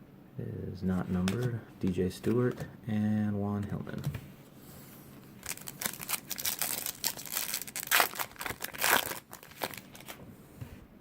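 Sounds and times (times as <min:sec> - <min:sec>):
foil wrapper tearing and crinkling: 0:05.4 - 0:10.2.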